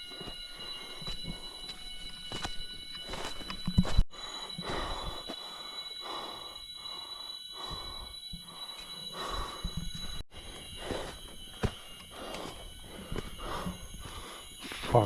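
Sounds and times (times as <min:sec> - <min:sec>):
high-pitched whine: 0:00.0 - 0:15.0
person breathing hard: 0:04.1 - 0:15.0.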